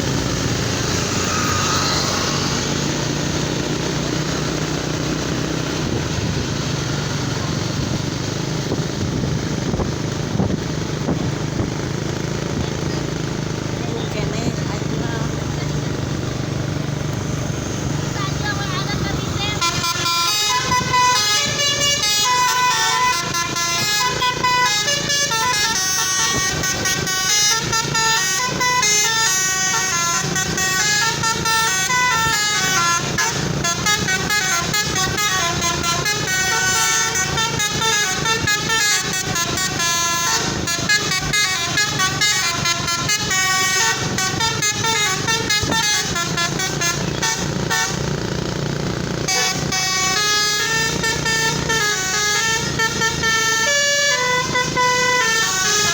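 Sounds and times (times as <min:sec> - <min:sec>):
multi-tone bus horn melody: 0:00.0 - 0:55.9.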